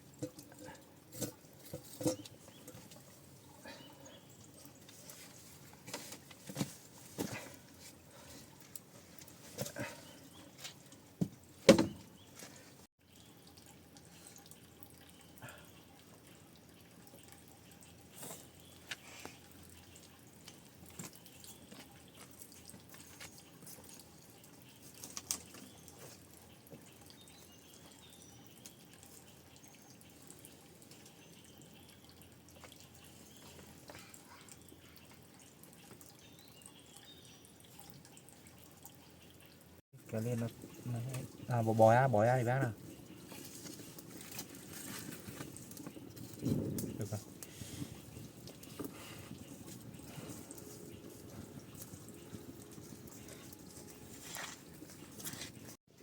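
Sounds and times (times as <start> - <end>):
water dripping: 0.0 - 12.3, 13.0 - 56.0.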